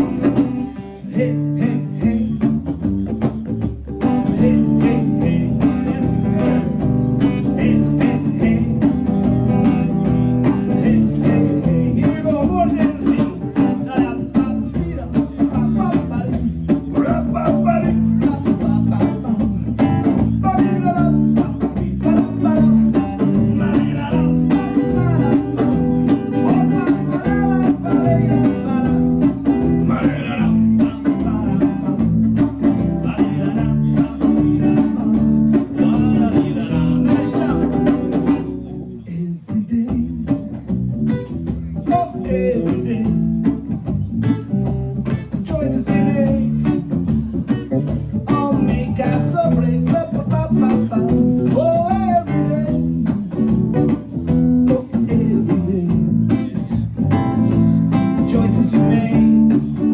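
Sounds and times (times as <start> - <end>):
live rock band playing: 0.0 - 59.9.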